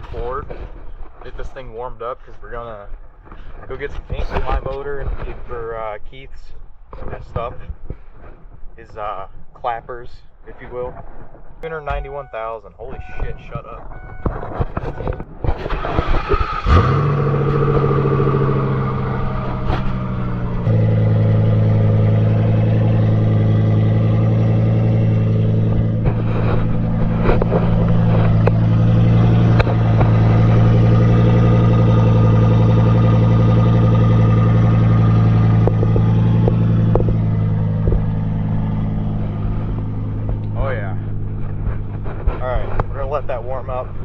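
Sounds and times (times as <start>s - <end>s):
car engine starting and idling: 11.7s - 44.0s.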